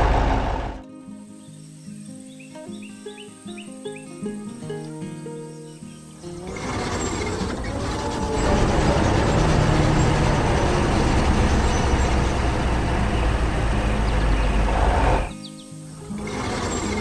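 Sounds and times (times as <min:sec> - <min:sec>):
heavy vehicle engine running: 0:00.0 - 0:00.8, 0:06.3 - 0:15.3, 0:16.0 - 0:17.0.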